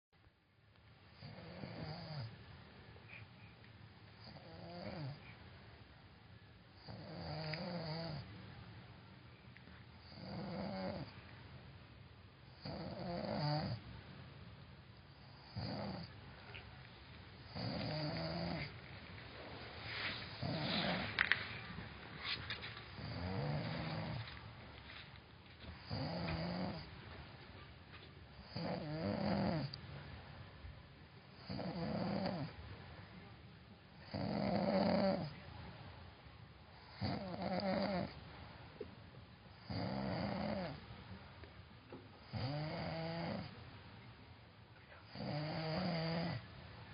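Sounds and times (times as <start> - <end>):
person snoring: 4.2 - 5.2, 6.8 - 8.2, 15.4 - 16.1, 17.5 - 18.8, 19.9 - 21.3, 22.9 - 24.3, 25.8 - 26.9, 28.4 - 29.7, 31.4 - 32.5, 42.3 - 43.5, 45.0 - 46.5.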